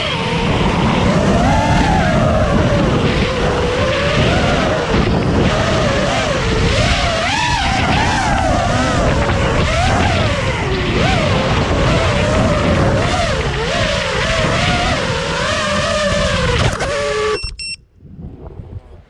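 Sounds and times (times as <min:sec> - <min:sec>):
drone motors whining: 0:00.0 - 0:17.8
short high beeps: 0:17.3 - 0:17.9.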